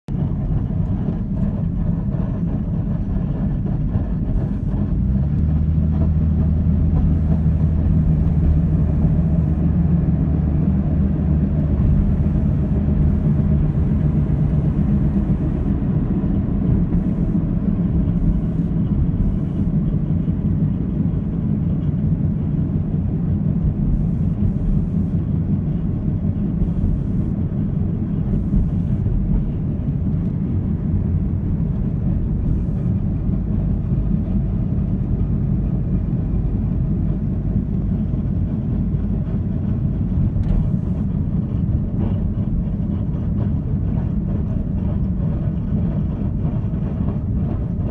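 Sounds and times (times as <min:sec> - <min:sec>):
motor droning: 0:06.9 - 0:09.8, 0:11.5 - 0:19.8, 0:23.9 - 0:25.2, 0:26.6 - 0:27.3.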